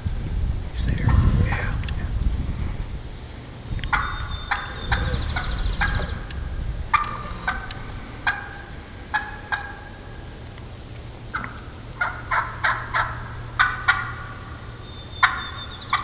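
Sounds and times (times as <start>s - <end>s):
turkey hen yelping: 3.8s - 10.4s, 11.3s - 16.0s.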